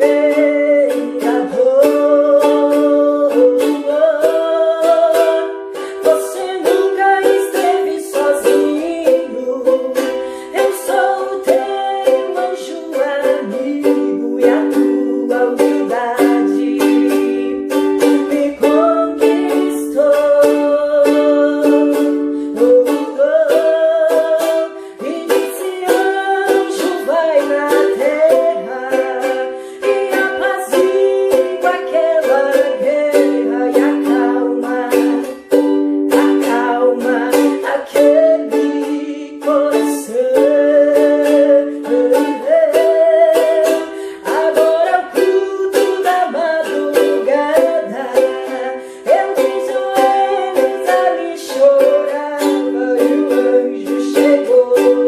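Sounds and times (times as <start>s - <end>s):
ukulele strumming a hymn: 0.0s - 55.0s.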